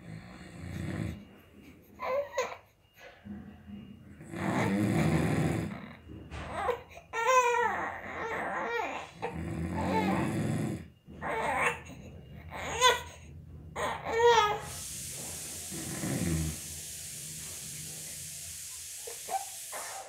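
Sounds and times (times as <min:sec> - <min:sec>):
man snoring: 0:00.0 - 0:01.3, 0:04.2 - 0:06.0, 0:09.1 - 0:10.9, 0:14.7 - 0:18.7
baby crying: 0:02.0 - 0:02.7, 0:06.4 - 0:10.3, 0:11.2 - 0:13.2, 0:13.8 - 0:14.8.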